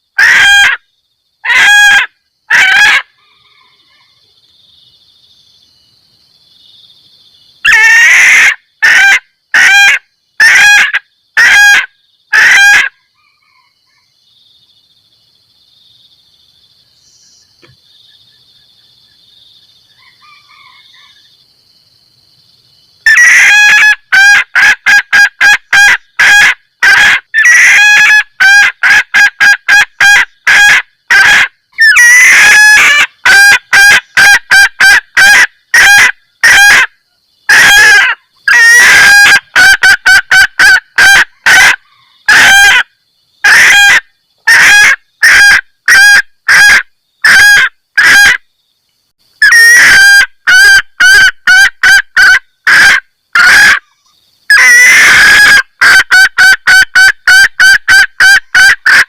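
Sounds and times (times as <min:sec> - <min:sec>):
junglefowl clucking call: 0:00.0 - 0:00.8, 0:01.4 - 0:04.2, 0:07.6 - 0:14.0, 0:23.0 - 0:48.4, 0:49.4 - 0:59.0
faint steady high tone: 0:13.0 - 0:21.5.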